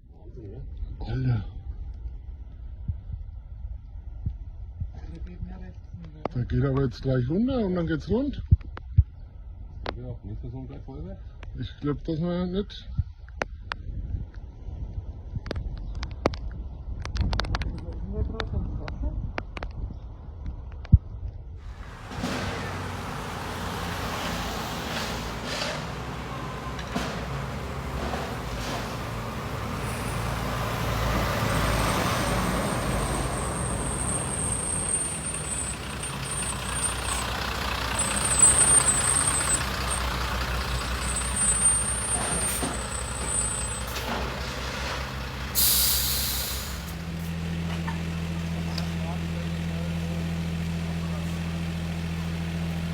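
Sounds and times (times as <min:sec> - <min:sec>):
heavy vehicle engine running: 0:21.6 - 0:52.9
air brake hiss: 0:45.6 - 0:47.0.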